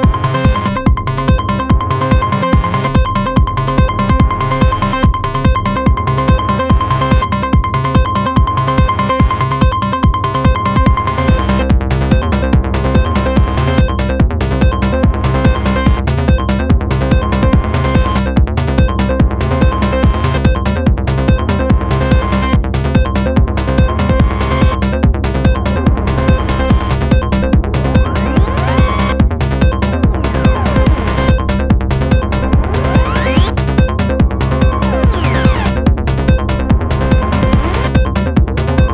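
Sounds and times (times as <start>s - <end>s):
drum machine beat: 0.0s - 38.9s
synth bass line: 0.0s - 38.9s
high synth tone: 21.9s - 38.4s.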